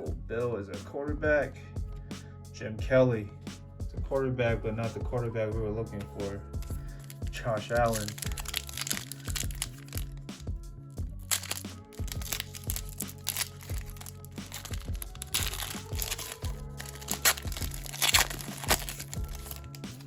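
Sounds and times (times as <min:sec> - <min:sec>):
background music with bass line: 0:00.0 - 0:20.0
foil wrapper crinkling: 0:06.6 - 0:10.2, 0:11.2 - 0:20.0.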